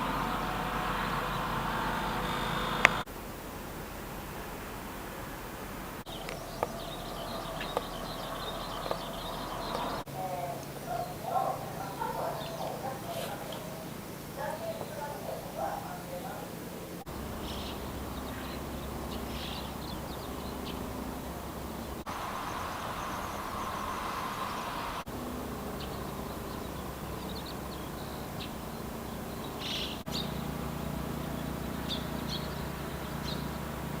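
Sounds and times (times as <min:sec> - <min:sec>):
steady low hum: 0:00.0 - 0:34.0
hiss: 0:22.0 - 0:25.1.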